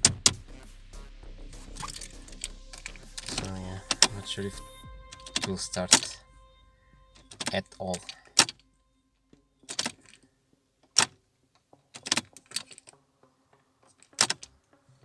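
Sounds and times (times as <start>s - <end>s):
car keys jangling and clicking: 1.6s - 6.2s, 7.2s - 8.6s, 9.6s - 11.2s, 11.9s - 13.0s, 13.9s - 14.5s.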